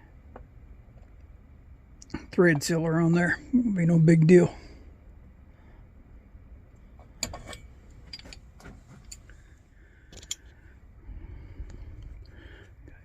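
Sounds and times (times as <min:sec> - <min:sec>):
metal parts clicking: 0:10.1 - 0:10.5.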